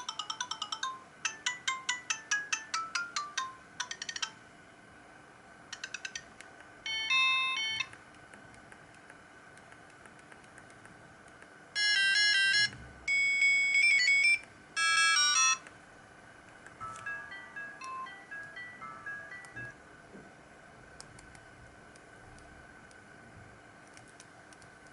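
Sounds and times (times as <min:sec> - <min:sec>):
phone ringtone beep melodies: 0:00.0 - 0:04.4, 0:06.9 - 0:07.9, 0:11.8 - 0:15.6, 0:16.8 - 0:19.8.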